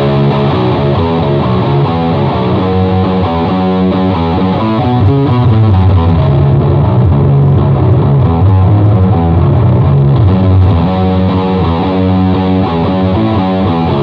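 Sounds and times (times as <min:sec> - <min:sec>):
bass guitar: 0:00.0 - 0:14.0
distorted electric guitar riff: 0:00.0 - 0:14.0
drums: 0:00.0 - 0:14.0.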